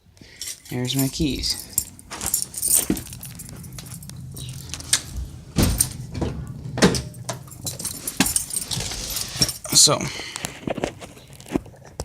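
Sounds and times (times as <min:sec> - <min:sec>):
keys clicking and knocking: 0:00.2 - 0:09.9
low steady hum: 0:00.4 - 0:09.7.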